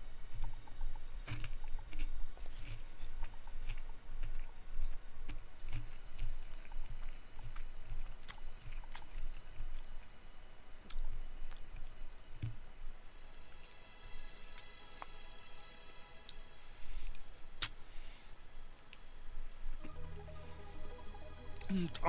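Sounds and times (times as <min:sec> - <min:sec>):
person chewing: 0:00.3 - 0:10.0.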